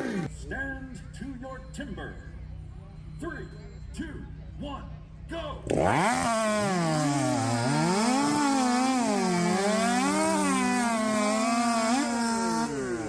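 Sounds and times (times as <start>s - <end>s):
chainsaws cutting logs: 0.0s - 0.3s, 5.6s - 13.0s.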